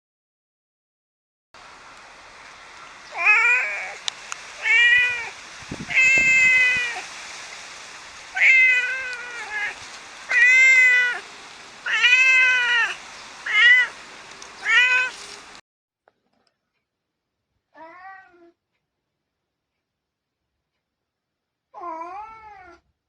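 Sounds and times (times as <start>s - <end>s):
cat meowing: 3.2s - 4.0s, 4.6s - 5.3s, 5.9s - 7.1s, 8.3s - 11.2s, 11.8s - 14.0s, 14.6s - 15.3s, 17.8s - 18.5s, 21.8s - 22.8s.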